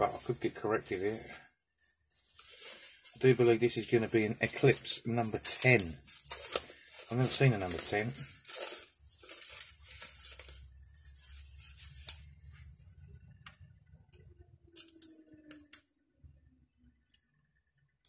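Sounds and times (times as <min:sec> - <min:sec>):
packaging rustling and tearing: 0:02.2 - 0:12.3.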